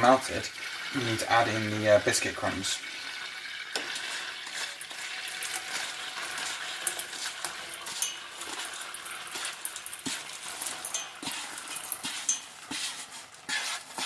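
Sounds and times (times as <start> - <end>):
butter sizzling: 0.0 - 14.0
utensil scraping a pan: 3.8 - 14.0.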